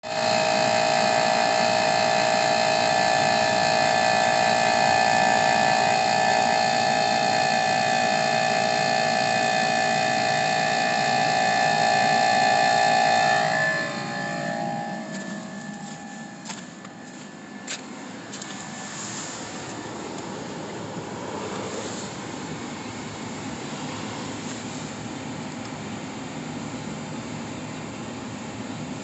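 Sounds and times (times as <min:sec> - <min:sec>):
heat pump whine: 0:00.0 - 0:29.0
rush of air: 0:18.4 - 0:23.1.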